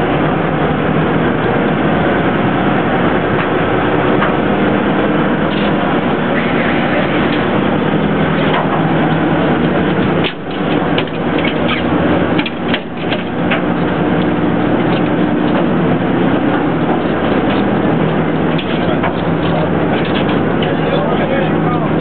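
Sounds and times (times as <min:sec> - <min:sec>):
boat engine humming: 0:00.0 - 0:22.0
sharp clicks and knocks: 0:09.6 - 0:15.7, 0:16.5 - 0:20.8.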